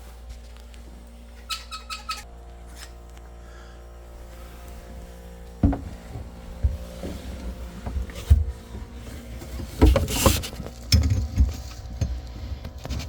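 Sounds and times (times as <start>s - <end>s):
steady low hum: 0.0s - 13.0s
tools knocking and clunking: 5.6s - 6.0s.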